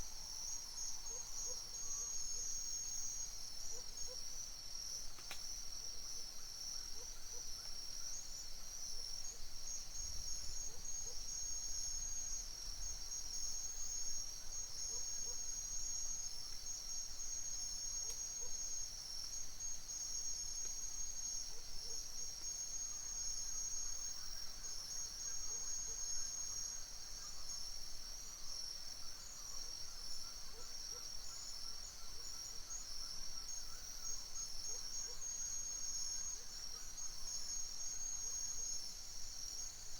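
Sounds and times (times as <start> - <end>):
faint low insect calls: 0.0 - 39.9
insects trilling: 9.2 - 39.9.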